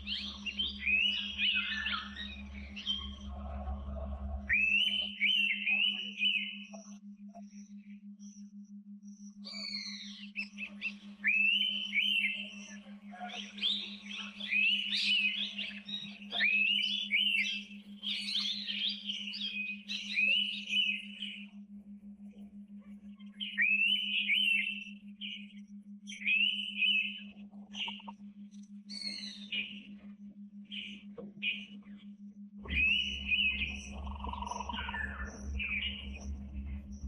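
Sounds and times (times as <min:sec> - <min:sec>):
bird whistled calls: 0:00.0 - 0:03.2, 0:04.5 - 0:06.8, 0:09.4 - 0:12.7, 0:13.4 - 0:21.4, 0:23.4 - 0:28.1, 0:32.6 - 0:36.5
steady low hum: 0:00.0 - 0:37.0.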